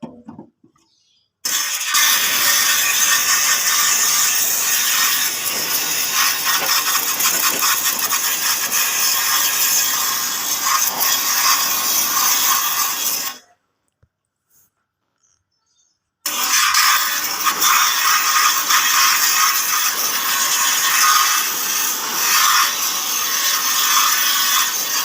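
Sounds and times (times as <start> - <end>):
washing machine drum scraping: 2.4 - 9.7.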